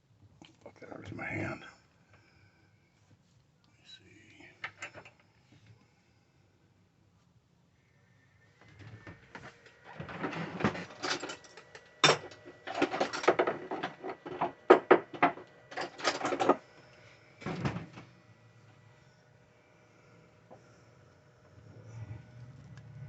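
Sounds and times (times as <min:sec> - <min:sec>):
scraping and clattering: 0:09.4 - 0:16.6.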